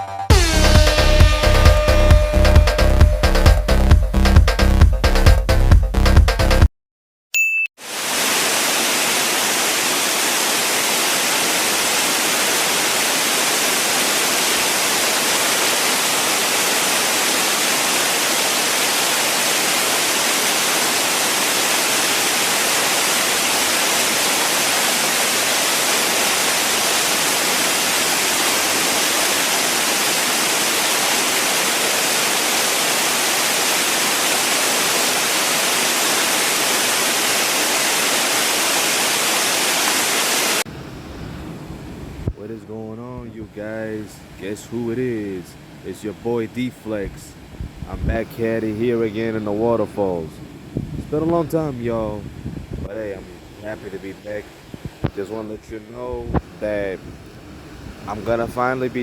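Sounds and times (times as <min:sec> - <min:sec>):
waterfall pouring: 0:07.8 - 0:40.7.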